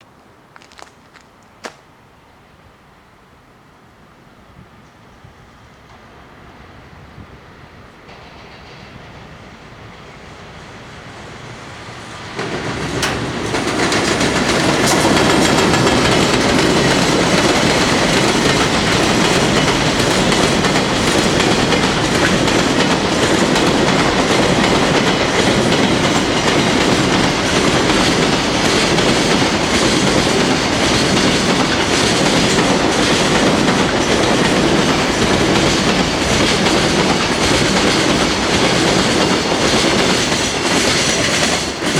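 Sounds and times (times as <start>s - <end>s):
electric locomotive passing: 2.1s - 41.9s
freight wagon wheel clatter: 12.4s - 26.2s.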